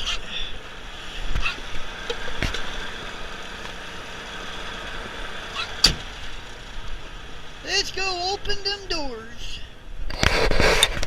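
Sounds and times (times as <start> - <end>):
truck diesel engine idling: 0.0 - 9.9.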